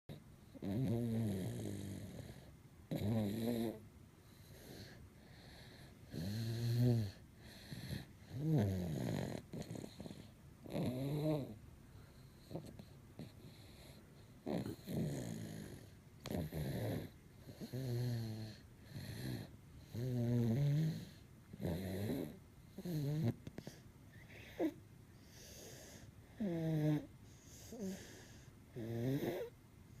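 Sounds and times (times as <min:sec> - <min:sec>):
child snoring: 0:00.5 - 0:03.8, 0:04.4 - 0:11.6, 0:12.4 - 0:29.6.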